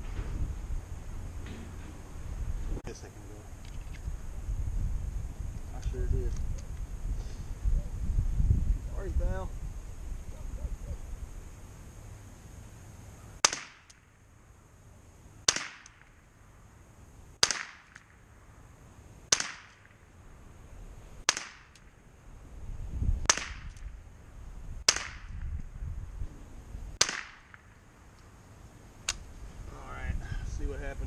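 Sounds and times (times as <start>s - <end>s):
rifle shots: 13.4s - 14.0s, 15.4s - 16.1s, 17.4s - 18.1s, 19.3s - 20.0s, 21.2s - 21.8s, 23.2s - 23.9s, 24.8s - 25.4s, 27.0s - 27.8s.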